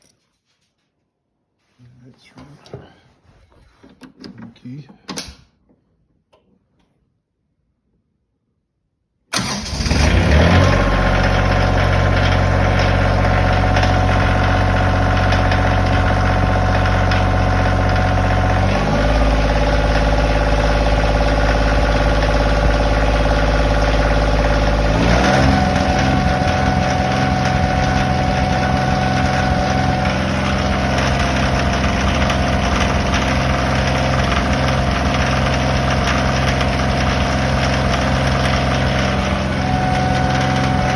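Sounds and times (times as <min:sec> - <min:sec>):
engine starting and running: 0:09.3 - 0:40.9
engine knock: 0:10.4 - 0:40.9.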